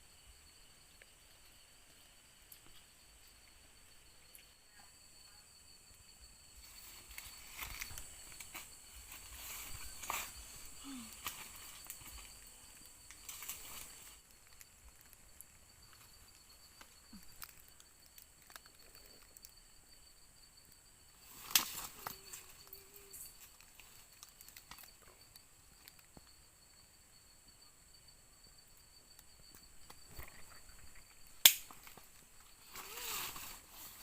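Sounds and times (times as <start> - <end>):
crickets chorus: 0.0 - 34.0
rustling: 6.6 - 19.3, 30.0 - 34.0
sharp loud snap: 31.4 - 31.8.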